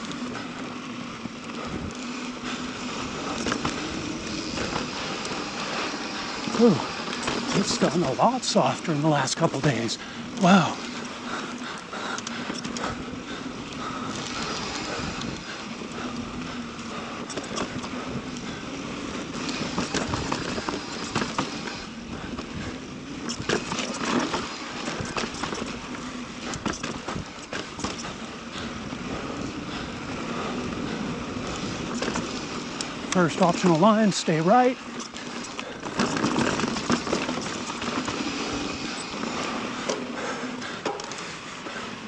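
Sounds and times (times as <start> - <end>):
steady low hum: 0.0 - 33.1
bike tyres rolling on dirt: 0.0 - 42.0
bike knocks and rattles: 6.2 - 8.7, 19.3 - 29.3, 31.4 - 33.8, 34.8 - 41.4.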